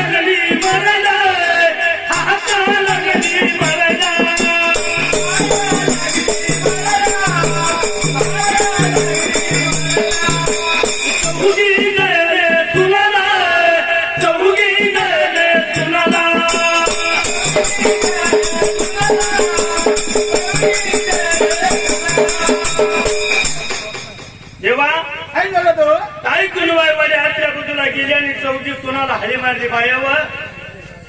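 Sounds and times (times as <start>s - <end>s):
steady drum beat: 0.0s - 1.5s, 2.1s - 13.1s, 14.2s - 24.8s
jingling rattle: 2.1s - 11.8s, 16.5s - 24.6s.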